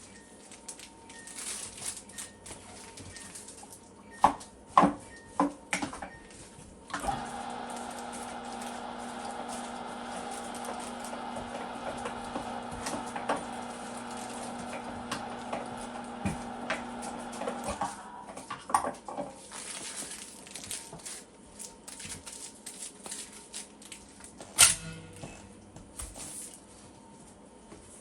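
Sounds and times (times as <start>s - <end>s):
utensils clicking and clattering: 0.0s - 4.9s, 6.9s - 25.5s
meat grinder motor humming: 6.9s - 18.6s.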